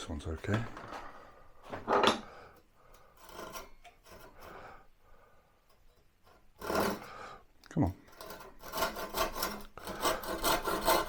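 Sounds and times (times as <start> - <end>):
hand saw cutting wood: 6.3 - 7.2, 8.1 - 11.0.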